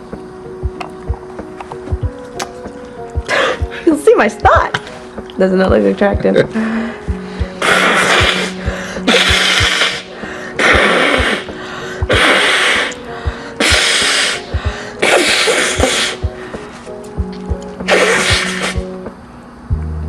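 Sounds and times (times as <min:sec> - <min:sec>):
background music with steady beat: 0:00.0 - 0:20.0
loud sneezes: 0:07.6 - 0:11.5, 0:12.1 - 0:13.0, 0:13.6 - 0:14.4, 0:15.0 - 0:16.2, 0:17.9 - 0:18.8.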